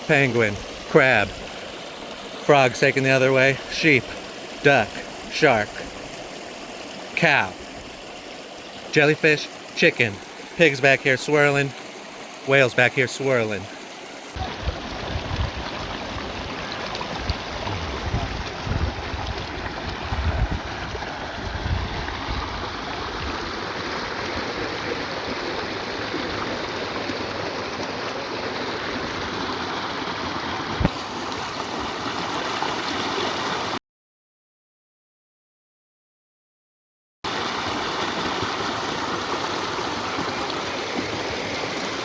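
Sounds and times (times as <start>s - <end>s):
creek water rushing over rocks: 0.0s - 33.8s, 37.3s - 42.0s
low microphone rumbles: 17.3s - 22.6s.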